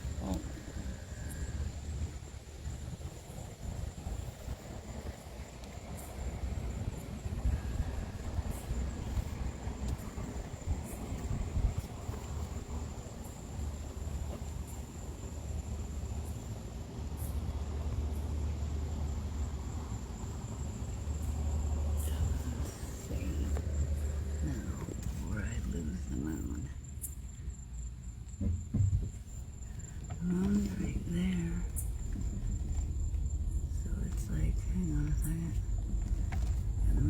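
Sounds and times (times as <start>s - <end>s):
crickets chirring: 0.0s - 37.0s
low rumble: 28.4s - 37.0s.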